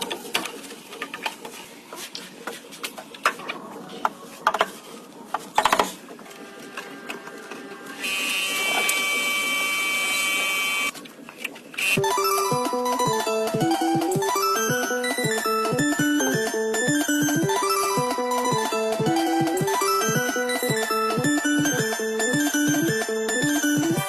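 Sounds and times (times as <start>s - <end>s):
small power tool whirring: 7.9s - 10.9s
music: 12.0s - 24.0s.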